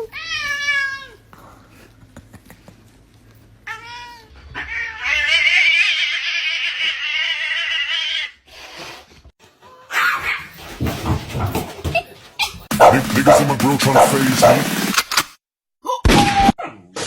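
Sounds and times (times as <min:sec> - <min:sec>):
cat yowling: 0:03.7 - 0:08.4, 0:09.6 - 0:10.6.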